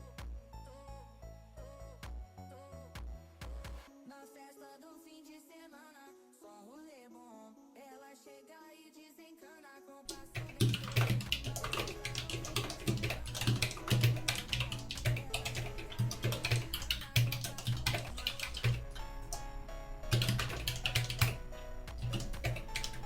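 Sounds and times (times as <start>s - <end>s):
background music with steady beat: 0.0s - 4.7s, 10.1s - 23.0s.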